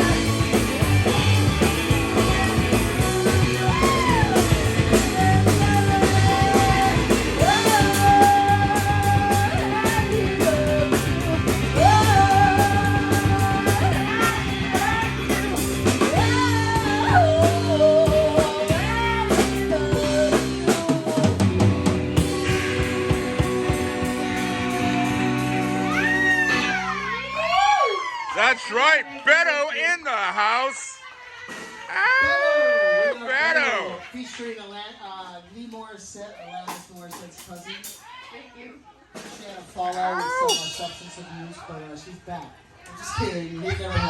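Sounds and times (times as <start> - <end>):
live rock band: 0.0 - 28.3.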